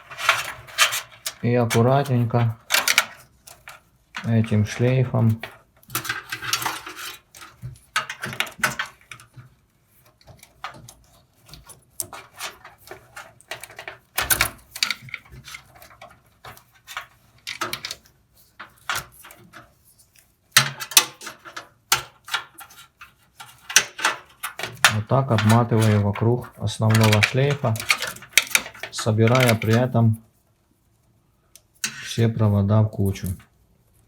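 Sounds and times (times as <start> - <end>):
light clicks and knocks: 0.0 - 30.2
cables rustling: 0.0 - 34.0.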